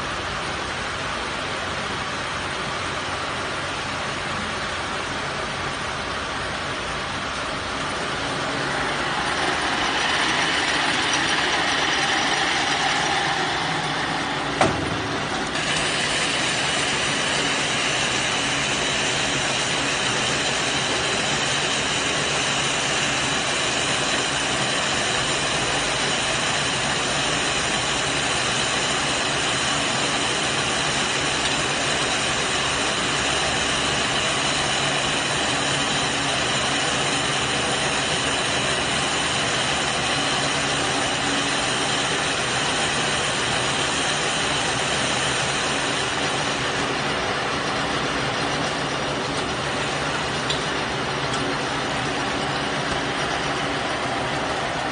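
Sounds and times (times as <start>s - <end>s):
baler machine running: 0.0s - 54.9s
steady high whine: 0.0s - 54.9s
sharp knock: 14.6s - 15.1s.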